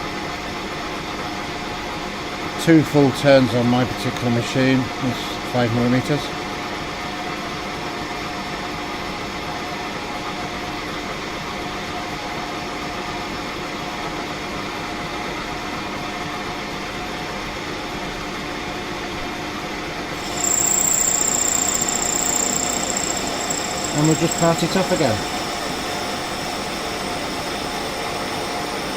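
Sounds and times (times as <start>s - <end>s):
high whistle of lathe cutting: 20.2s - 28.9s
lathe humming: 20.2s - 28.9s.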